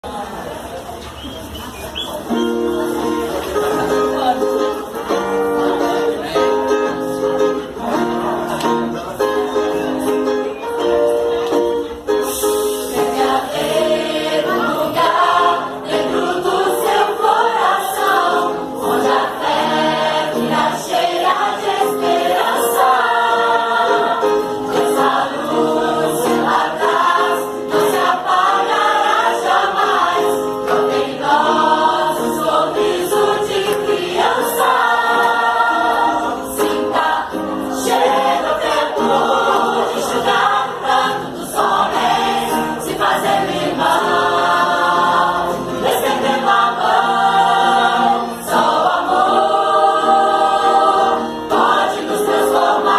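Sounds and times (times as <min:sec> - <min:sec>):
choir singing: 0:12.4 - 0:52.9.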